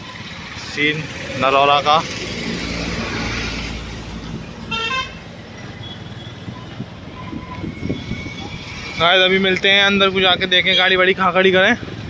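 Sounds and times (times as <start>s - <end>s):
traffic engine rumble: 0.0s - 12.0s
vehicle horn tooting: 4.7s - 5.2s.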